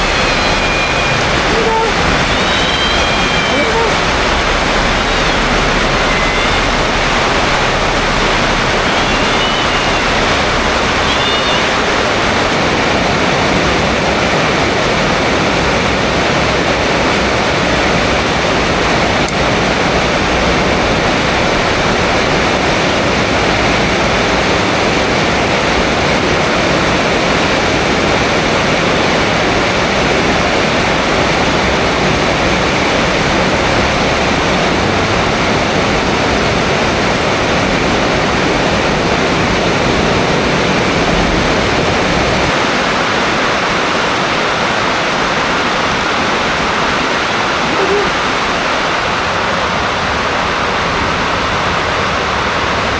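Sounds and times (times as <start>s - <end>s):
faint high calls: 0.0s - 12.6s
heavy rain pouring: 0.0s - 52.9s.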